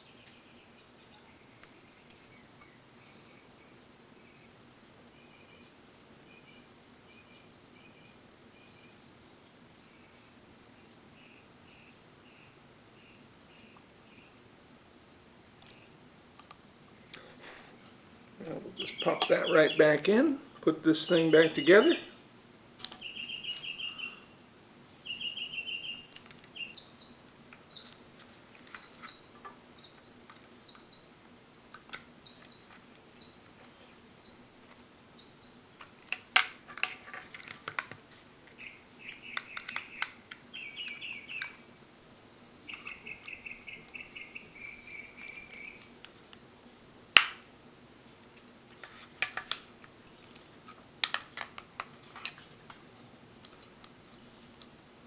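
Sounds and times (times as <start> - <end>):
birds chirping: 0.0 - 14.4, 17.1 - 31.3, 32.1 - 46.0, 46.6 - 47.2, 49.1 - 50.7, 52.2 - 53.0, 54.1 - 54.8
clicks of small parts handled: 50.6 - 52.8.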